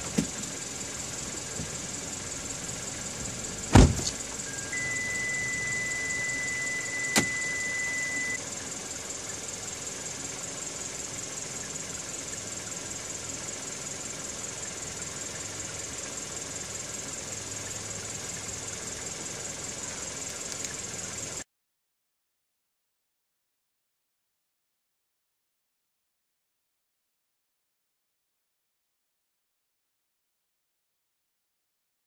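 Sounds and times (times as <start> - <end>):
high-pitched electronic beep: 4.4 - 8.4.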